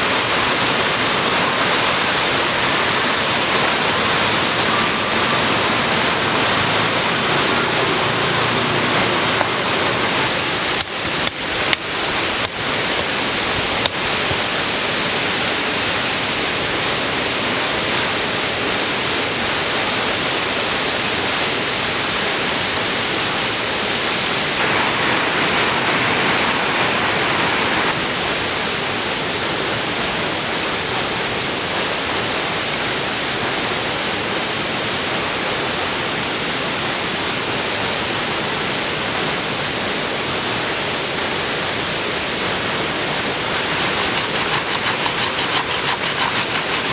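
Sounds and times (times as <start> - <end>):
waterfall rushing: 0.0 - 11.2, 24.6 - 28.0.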